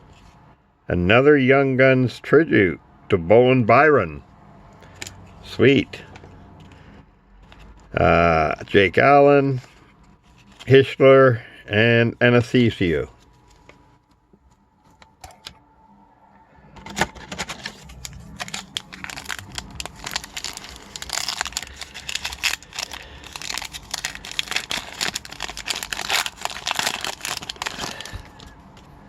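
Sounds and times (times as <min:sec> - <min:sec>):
foil wrapper tearing and crinkling: 0:17.3 - 0:28.6.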